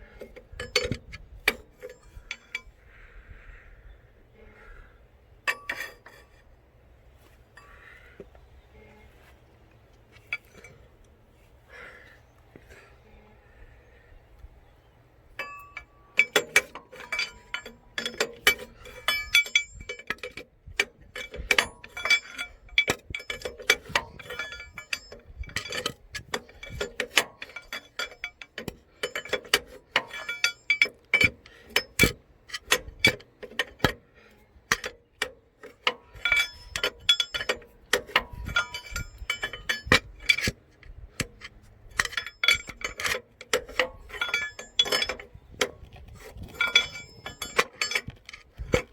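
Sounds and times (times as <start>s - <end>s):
metal hand tools clicking and clinking: 5.5s - 6.4s, 15.4s - 48.9s.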